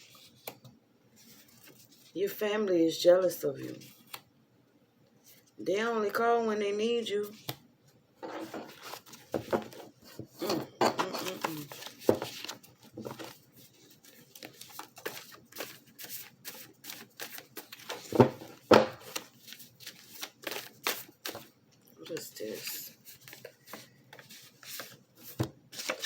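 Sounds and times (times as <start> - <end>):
cards being shuffled: 8.7 - 10.2, 11.2 - 21.5, 22.2 - 26.0.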